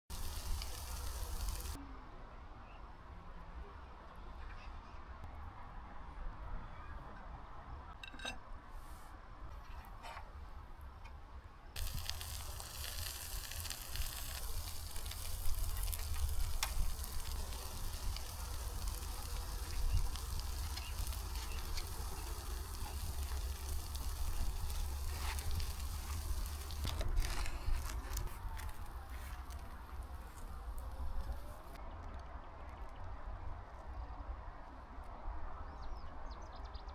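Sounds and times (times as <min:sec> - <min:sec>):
sausage sizzling over embers: 0:00.0 - 0:01.8, 0:11.8 - 0:31.8.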